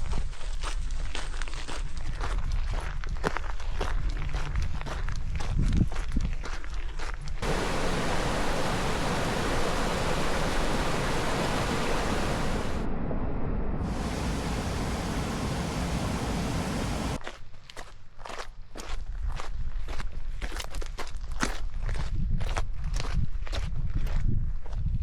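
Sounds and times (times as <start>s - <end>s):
rushing water roar: 7.4s - 12.9s, 13.8s - 17.2s.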